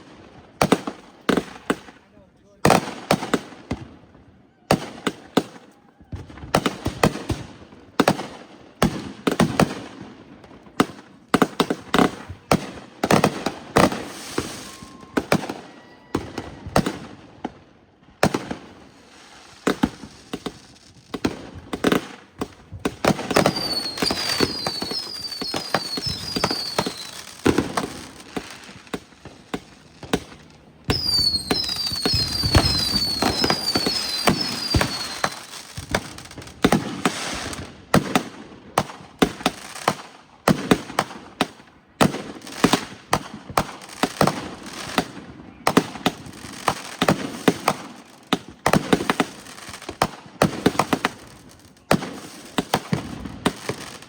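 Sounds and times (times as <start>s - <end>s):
fireworks bangs and booms: 0.0s - 54.0s
high falling chirp: 31.0s - 35.2s.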